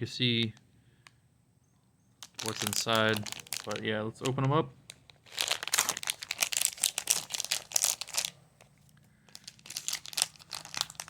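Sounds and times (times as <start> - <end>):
plastic packaging crinkling and tearing: 2.2 - 11.0.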